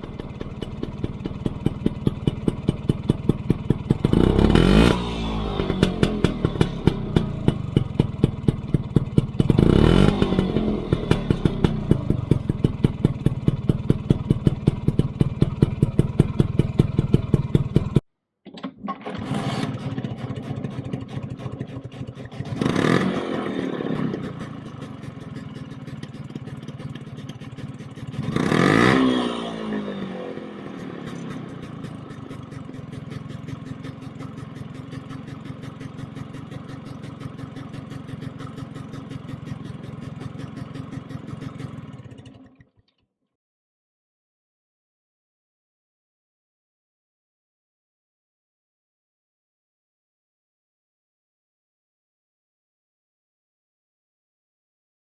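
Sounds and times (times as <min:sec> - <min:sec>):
scooter engine idling and revving: 0:00.0 - 0:18.1, 0:19.0 - 0:43.0.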